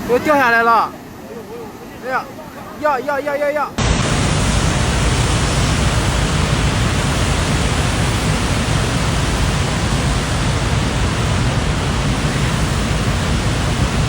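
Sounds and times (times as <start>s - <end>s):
rushing floodwater roar: 3.8s - 14.0s.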